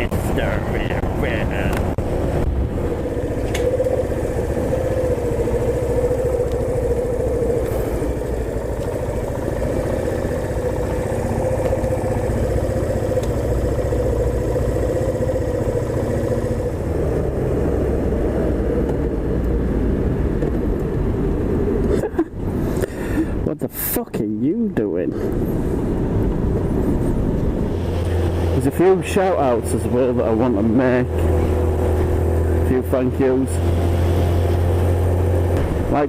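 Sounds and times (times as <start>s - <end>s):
motorcycle engine running: 0.0s - 19.3s, 27.4s - 36.0s.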